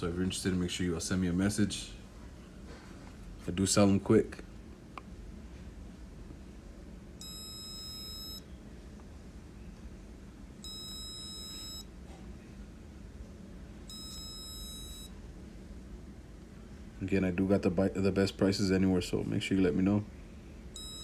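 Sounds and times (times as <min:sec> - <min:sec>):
low steady hum: 0:00.0 - 0:21.0
electronic beeps: 0:07.2 - 0:08.4, 0:10.6 - 0:11.9, 0:13.9 - 0:15.1, 0:20.8 - 0:21.0.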